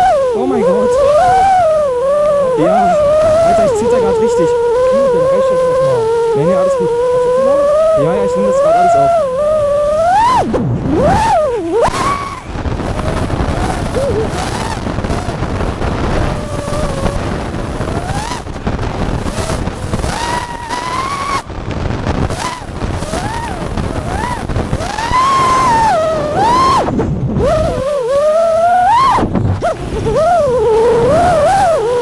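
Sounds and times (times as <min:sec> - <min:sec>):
quadcopter motors whining: 0:00.0 - 0:32.0
rush of wind: 0:00.0 - 0:32.0.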